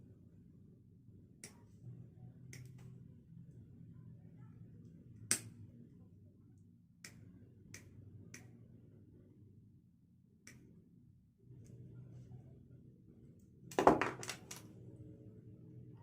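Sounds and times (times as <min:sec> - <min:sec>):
faint low hum: 0:00.0 - 0:16.0.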